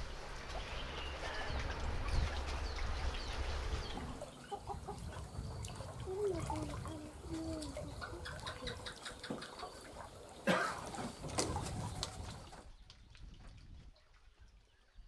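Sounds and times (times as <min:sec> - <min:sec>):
low wind rumble: 0:00.0 - 0:09.0
lake waves washing at shore: 0:00.0 - 0:12.7.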